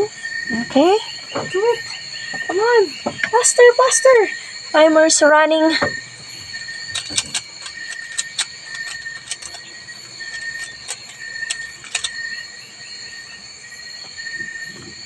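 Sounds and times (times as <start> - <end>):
high-pitched drone: 0.0 - 15.0
puzzle cube clicking: 6.9 - 9.6, 10.2 - 12.2.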